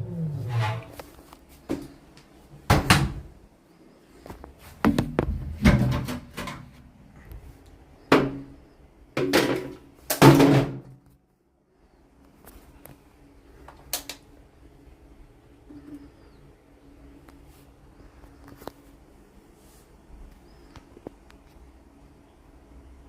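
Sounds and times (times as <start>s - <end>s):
washing machine drum turning: 4.8s - 6.8s.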